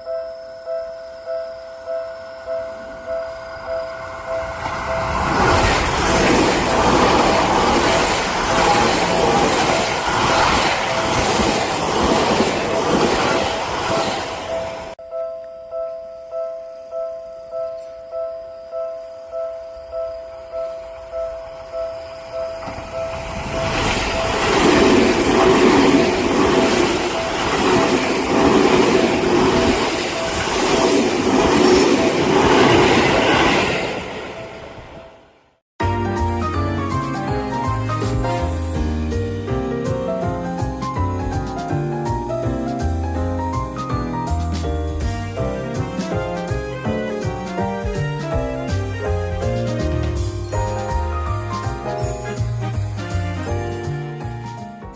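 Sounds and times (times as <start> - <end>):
music: 0.0 - 5.6, 14.6 - 27.7, 35.8 - 54.9
train passing at speed: 2.5 - 15.0, 20.6 - 39.4.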